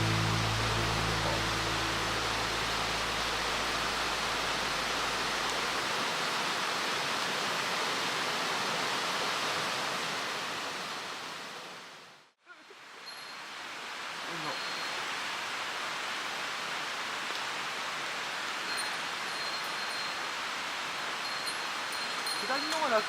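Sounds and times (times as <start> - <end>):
music track low notes: 0.0 - 5.6
stream water rushing: 0.0 - 23.0.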